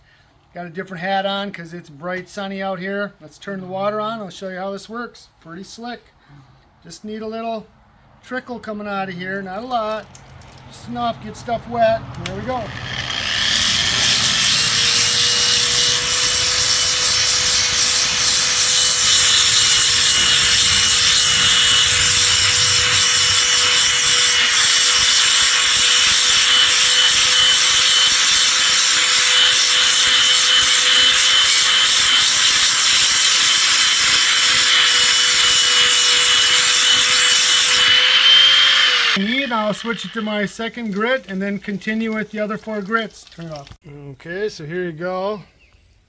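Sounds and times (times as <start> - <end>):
wet grinder motor whine: 12.2 - 40.2
grinding pad scrubbing wet stone: 12.2 - 42.4.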